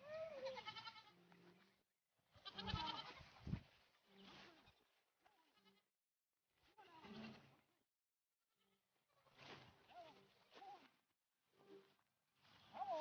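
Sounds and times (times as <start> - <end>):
goat bleating: 0.0 - 1.2, 2.4 - 3.2, 5.4 - 5.8.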